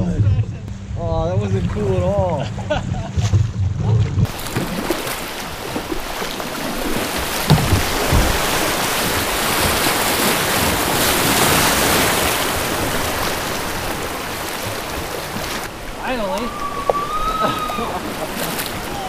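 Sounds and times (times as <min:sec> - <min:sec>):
low thumps: 0:00.0 - 0:09.9
river rapid rushing: 0:04.3 - 0:19.0
wind buffeting microphone: 0:05.4 - 0:19.0.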